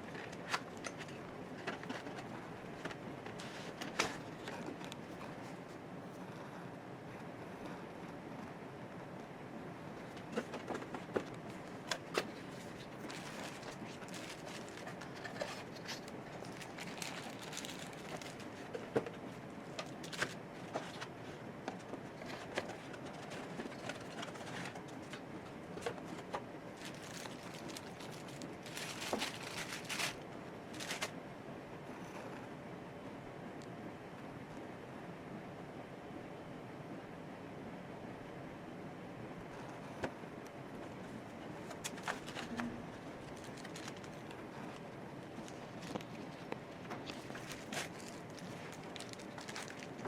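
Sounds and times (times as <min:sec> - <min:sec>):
steady background hiss: 0:00.0 - 0:50.0
packaging rustling: 0:10.0 - 0:31.2, 0:41.1 - 0:50.0.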